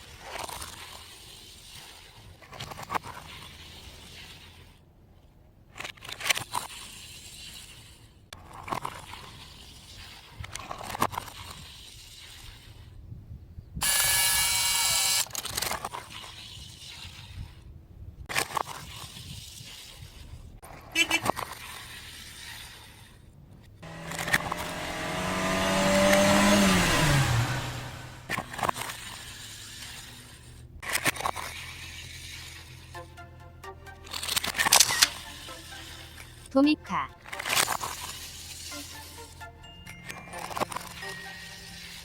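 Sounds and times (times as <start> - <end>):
toy cars and track clicking: 5.8 - 11.4, 13.8 - 15.9, 28.3 - 33.0, 34.0 - 42.0.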